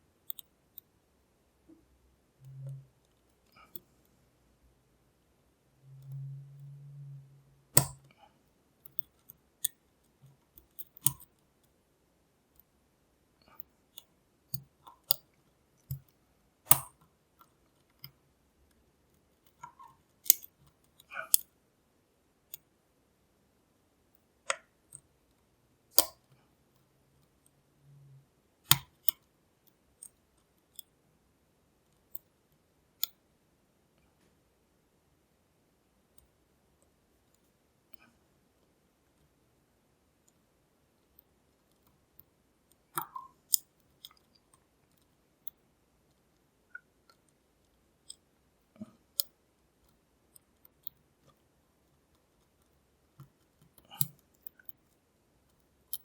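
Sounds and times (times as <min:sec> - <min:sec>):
lock pick clicking in padlock: 0:07.8 - 0:08.1, 0:10.6 - 0:11.3, 0:16.7 - 0:17.0, 0:20.2 - 0:20.6, 0:26.0 - 0:26.3, 0:28.7 - 0:29.2, 0:53.2 - 0:54.7.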